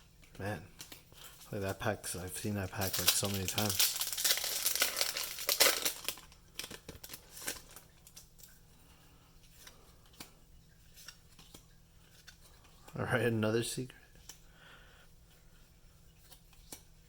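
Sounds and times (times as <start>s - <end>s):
foil pack crinkling and tearing: 1.2s - 8.3s.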